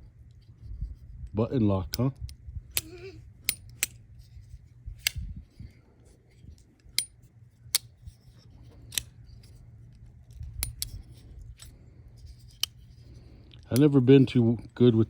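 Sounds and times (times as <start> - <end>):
knife blade snapping open and shut: 5.0 - 5.3, 10.4 - 11.7.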